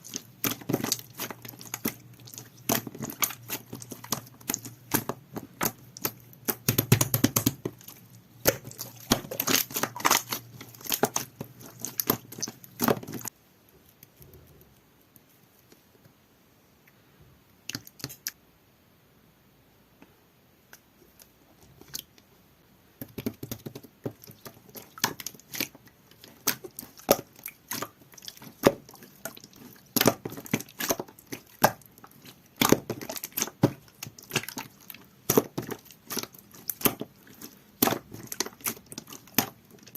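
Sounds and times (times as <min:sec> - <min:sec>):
slime squished by hand: 0:00.0 - 0:13.3, 0:23.0 - 0:39.9.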